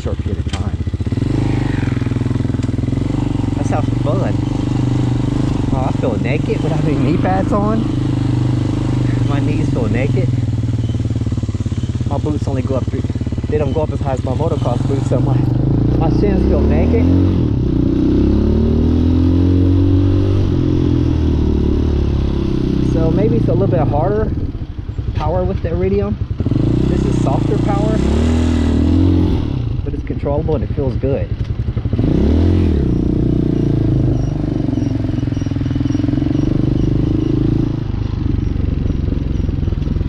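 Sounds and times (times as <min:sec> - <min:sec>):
motorcycle engine running: 0:00.0 - 0:40.0
faint high chirp: 0:10.7 - 0:12.2, 0:33.5 - 0:40.0.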